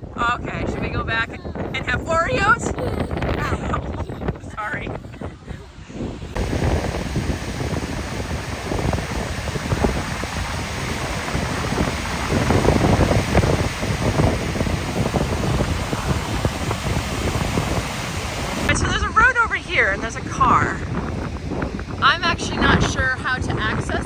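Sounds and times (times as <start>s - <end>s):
wind buffeting microphone: 0.0s - 24.0s
water pouring over spillway: 6.4s - 18.8s.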